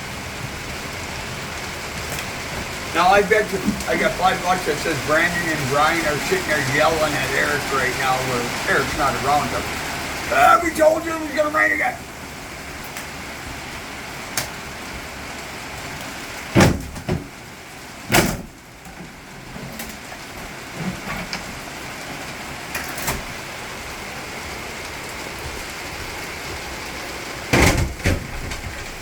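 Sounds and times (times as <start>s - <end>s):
steady rain falling: 0.0s - 29.0s
loud knocks and bangs: 16.5s - 17.4s, 27.5s - 29.0s.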